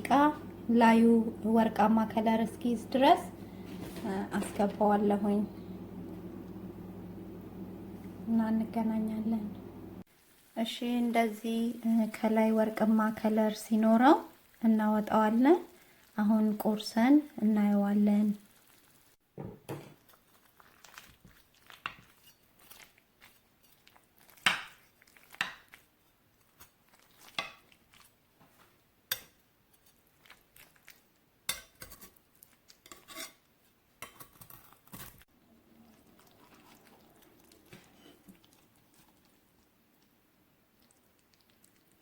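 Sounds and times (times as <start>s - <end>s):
utensil scraping baking dish: 32.8s - 34.8s.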